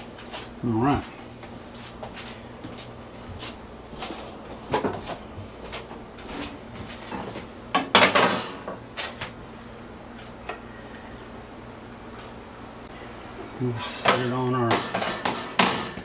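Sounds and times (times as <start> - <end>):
dishes and utensils clattering: 6.4 - 9.2, 13.9 - 16.0.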